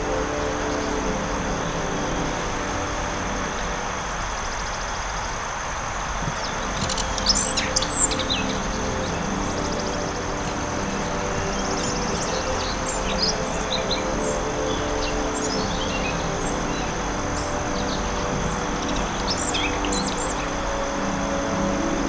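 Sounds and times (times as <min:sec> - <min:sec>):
steady rushing background: 0:00.0 - 0:22.0
birds chirping and trilling: 0:06.4 - 0:22.0.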